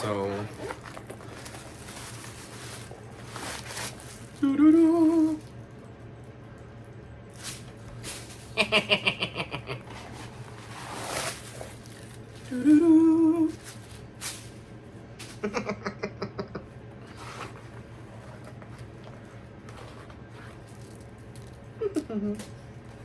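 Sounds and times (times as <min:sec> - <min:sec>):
person humming: 0:04.4 - 0:05.5, 0:12.5 - 0:13.6, 0:21.8 - 0:22.5.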